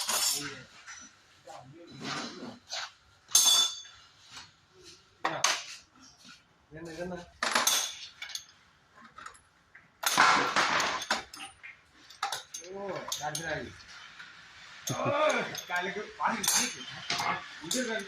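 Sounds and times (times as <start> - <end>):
metal tools clinking: 0.0 - 1.2, 3.3 - 4.1, 7.4 - 9.4, 10.0 - 18.0.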